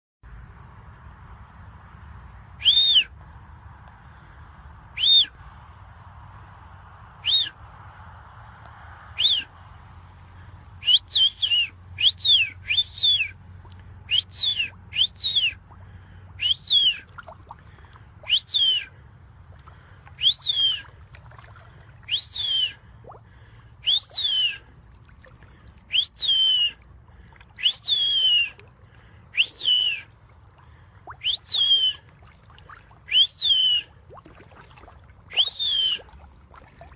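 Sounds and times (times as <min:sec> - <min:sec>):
person whistling short notes: 0:02.6 - 0:03.2, 0:05.0 - 0:05.4, 0:07.2 - 0:07.6, 0:09.2 - 0:09.5, 0:10.8 - 0:13.4, 0:14.1 - 0:15.6, 0:16.4 - 0:17.1, 0:18.2 - 0:18.9, 0:20.2 - 0:20.9, 0:22.1 - 0:22.8, 0:23.8 - 0:24.7, 0:25.9 - 0:26.8, 0:27.6 - 0:28.6, 0:29.3 - 0:30.1, 0:31.1 - 0:32.1, 0:33.0 - 0:34.0, 0:35.3 - 0:36.2.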